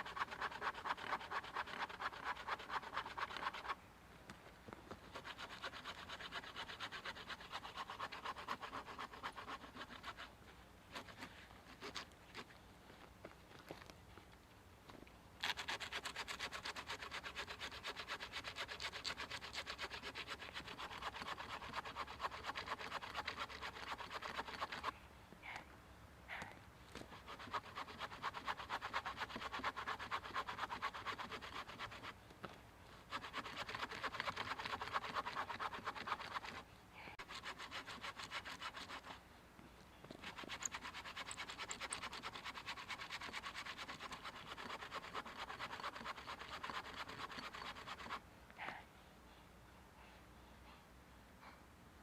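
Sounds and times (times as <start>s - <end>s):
hand saw cutting through log: 0.0s - 3.8s, 5.1s - 10.3s, 15.4s - 24.9s, 27.0s - 32.2s, 33.0s - 36.6s, 37.2s - 39.2s, 40.2s - 48.2s.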